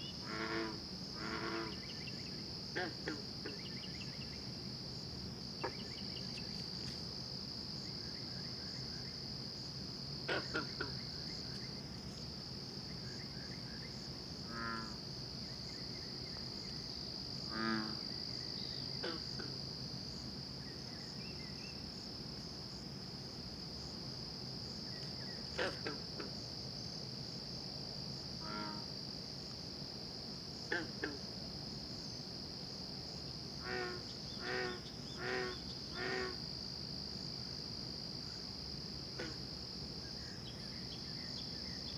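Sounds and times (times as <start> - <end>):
frogs honking calls: 0.2 - 1.9, 10.3 - 11.1, 14.4 - 15.0, 17.5 - 18.0, 19.0 - 19.5, 25.5 - 26.3, 28.4 - 28.9, 30.7 - 31.2, 33.6 - 36.4, 39.2 - 39.5
frogs trilling: 5.6 - 6.5, 33.6 - 36.4.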